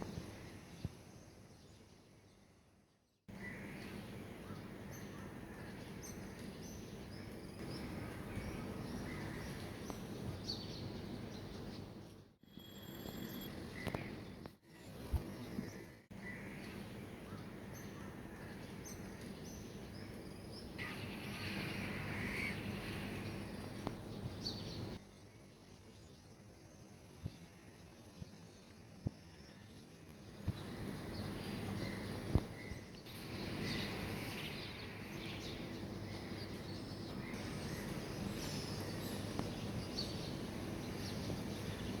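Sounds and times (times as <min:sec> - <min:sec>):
city background hum: 0:00.0 - 0:42.0
low background noise: 0:00.0 - 0:42.0
small birds chirping: 0:13.6 - 0:42.0.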